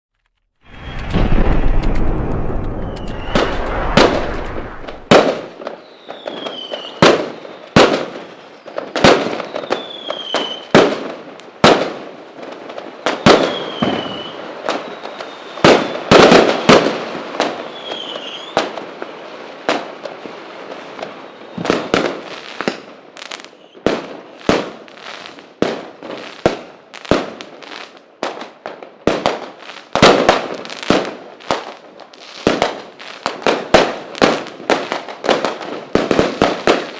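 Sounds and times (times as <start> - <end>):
deep rumble: 0.6 - 5.1
fireworks bangs: 0.6 - 36.9
fireworks crackling: 0.6 - 36.9
short falling whistles: 2.8 - 5.0.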